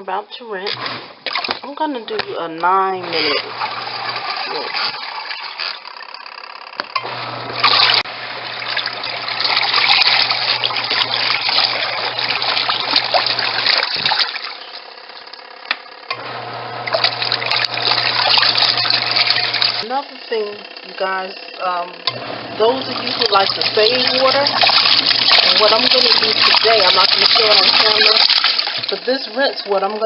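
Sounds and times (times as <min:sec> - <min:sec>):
washing machine motor humming: 0:00.0 - 0:30.0
water sloshing: 0:00.6 - 0:06.0, 0:07.3 - 0:15.3, 0:16.7 - 0:19.9, 0:22.6 - 0:30.0.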